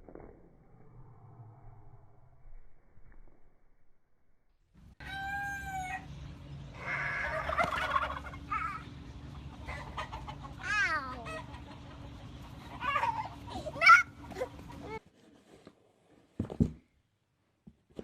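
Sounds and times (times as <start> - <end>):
rooster crowing: 5.0 - 6.1
chickens clucking: 5.1 - 15.0.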